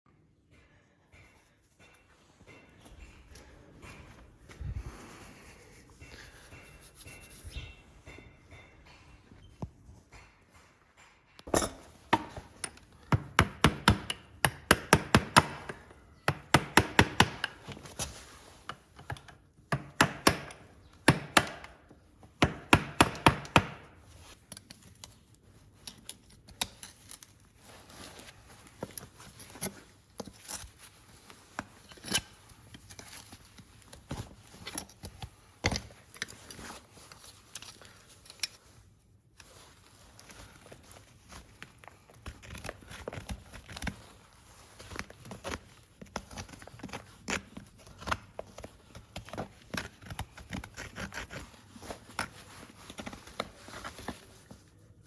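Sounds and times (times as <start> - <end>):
tools knocking on horse hoof: 10.2 - 17.6, 19.7 - 24.0.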